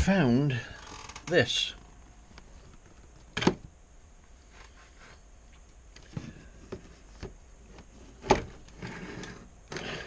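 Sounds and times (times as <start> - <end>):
faint room hiss: 0.0 - 10.0.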